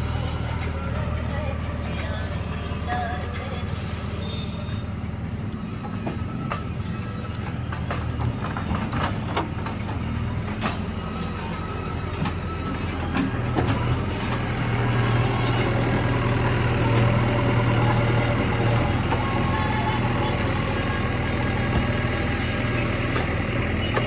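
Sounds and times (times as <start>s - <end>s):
diesel machinery engine humming: 0.0s - 24.0s.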